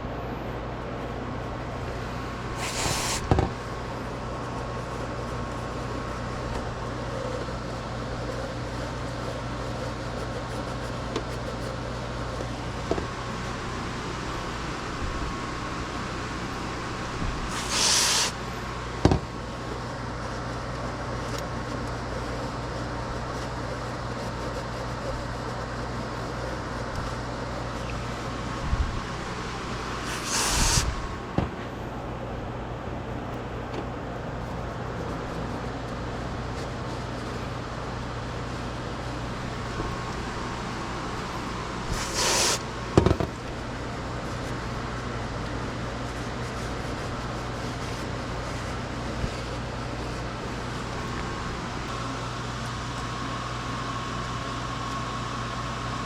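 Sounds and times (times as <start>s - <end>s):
short air hisses: 2.5s - 3.4s, 17.4s - 18.4s, 30.0s - 31.2s, 41.8s - 42.7s.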